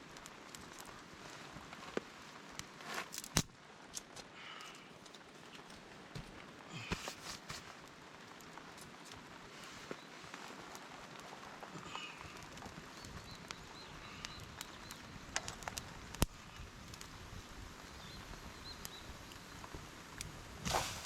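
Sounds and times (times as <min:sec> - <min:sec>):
raindrops tapping: 0:00.0 - 0:20.7
rain hissing: 0:00.0 - 0:21.0
birds chirping: 0:11.8 - 0:19.7.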